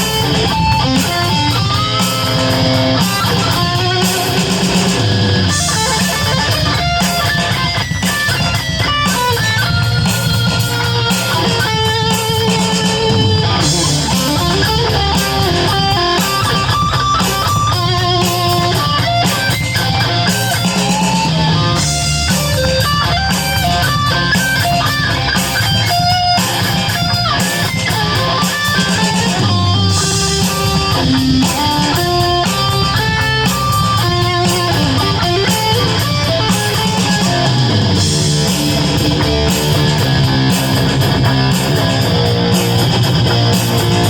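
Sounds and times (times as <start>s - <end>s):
distorted electric guitar melody: 0.0s - 44.0s.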